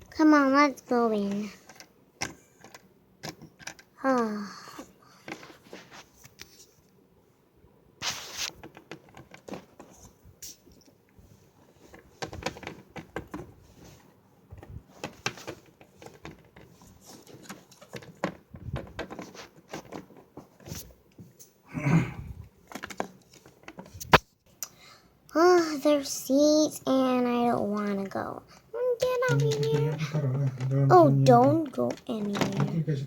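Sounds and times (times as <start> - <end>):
plastic toy figures clicking: 1.3 - 3.9, 29.0 - 32.7.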